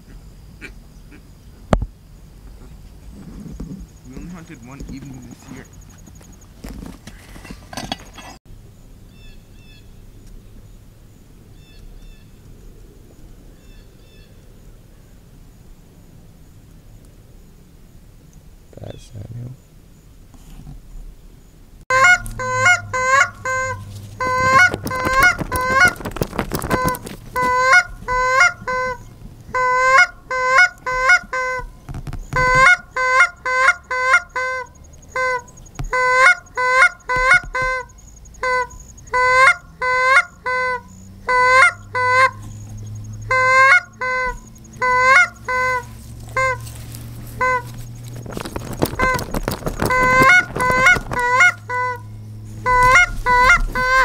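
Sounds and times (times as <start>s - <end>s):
geese honking: 21.9s - 54.0s.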